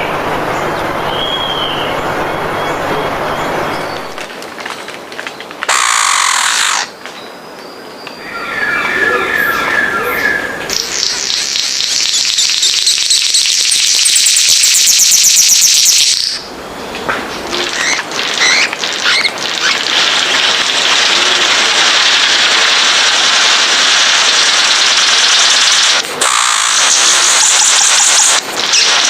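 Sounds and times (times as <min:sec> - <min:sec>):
steady high hiss: 0:00.0 - 0:29.0
bird rattling call: 0:05.7 - 0:06.9.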